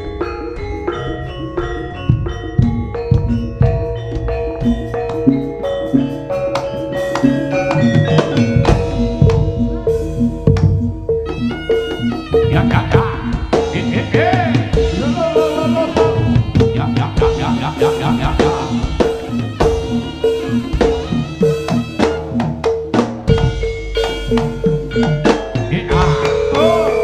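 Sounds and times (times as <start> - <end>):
gamelan-style percussion: 0.0 - 27.0
hand drums: 0.0 - 27.0
pitched metallic note: 26.0 - 27.0.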